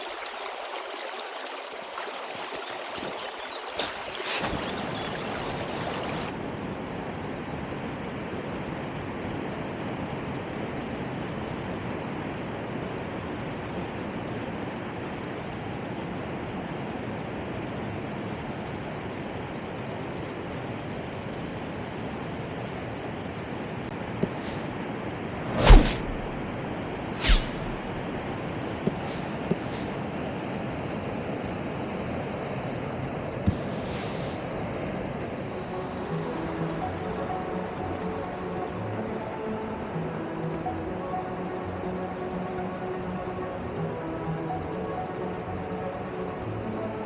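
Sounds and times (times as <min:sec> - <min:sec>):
flowing mountain water: 0:00.0 - 0:06.4.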